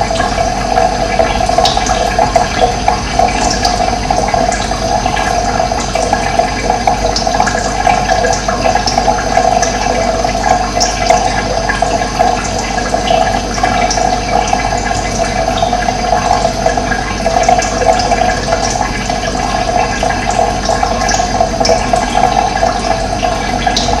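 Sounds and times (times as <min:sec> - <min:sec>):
running water rushing: 0:00.0 - 0:24.0.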